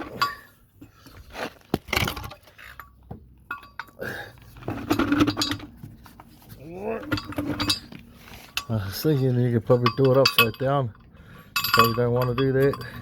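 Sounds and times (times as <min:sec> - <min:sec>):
metal hardware clinking: 0:00.0 - 0:00.5, 0:01.9 - 0:04.0, 0:07.0 - 0:13.0.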